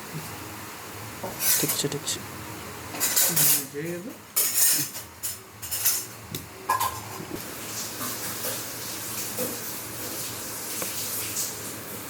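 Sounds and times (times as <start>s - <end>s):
metal utensils and pots clattering: 1.4s - 1.9s, 3.0s - 3.7s, 4.4s - 6.1s, 6.7s - 7.2s.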